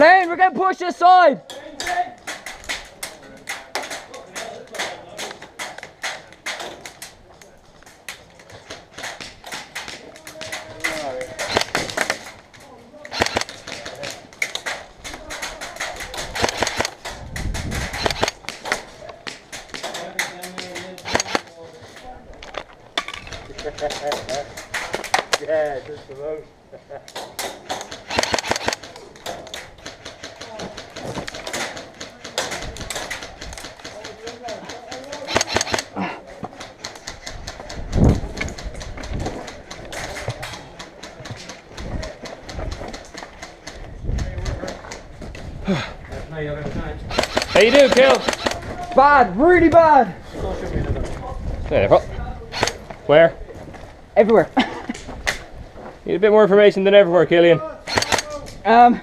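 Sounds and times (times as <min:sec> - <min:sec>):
airsoft guns firing: 0:08.5 - 0:12.4, 0:13.1 - 0:21.6, 0:27.4 - 0:43.8, 0:47.1 - 0:49.2, 0:52.5 - 0:52.8, 0:57.9 - 0:58.4.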